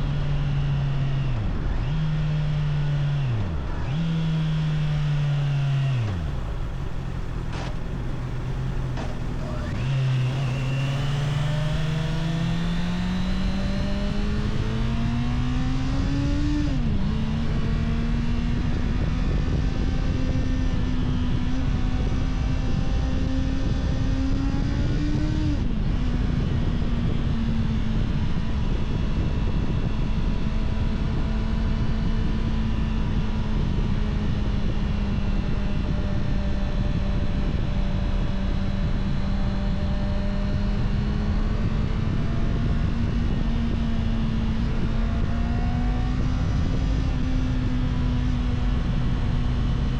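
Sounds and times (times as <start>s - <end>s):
motorcycle engine accelerating: 0.0s - 49.9s.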